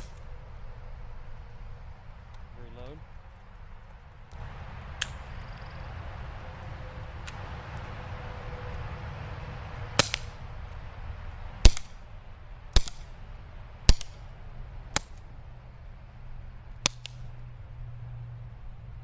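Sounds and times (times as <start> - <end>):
airsoft revolver shots: 10.0 - 10.4, 11.6 - 12.0, 12.7 - 13.2, 13.9 - 14.2, 16.8 - 17.3.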